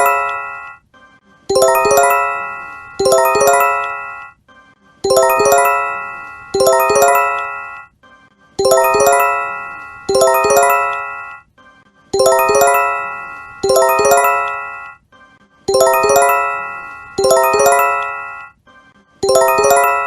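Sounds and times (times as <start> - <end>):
bell-like warning chime: 1.5 - 4.3, 5.1 - 7.9, 8.6 - 11.4, 12.2 - 15.0, 15.7 - 18.5.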